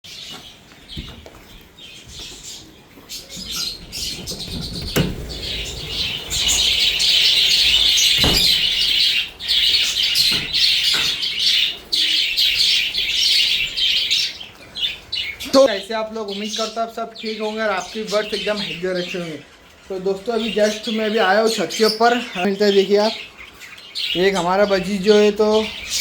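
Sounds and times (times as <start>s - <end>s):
birds chattering and chirping: 0.1s - 26.0s
sharp knocks: 3.4s - 7.1s.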